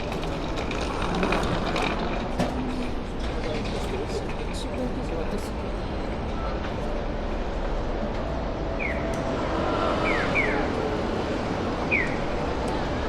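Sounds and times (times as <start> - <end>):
traffic noise: 0.0 - 13.0.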